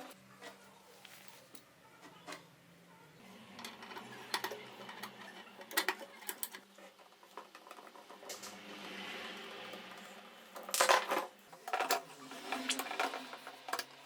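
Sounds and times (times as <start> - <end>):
small tools clicking and tapping: 3.6 - 8.5.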